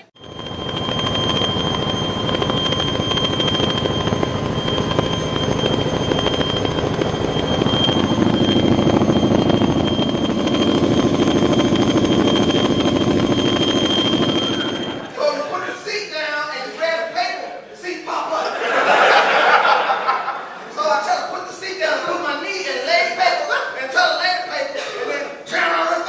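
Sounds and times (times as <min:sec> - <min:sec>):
high engine whine: 0:00.0 - 0:15.2
aircraft engines droning: 0:00.1 - 0:15.2.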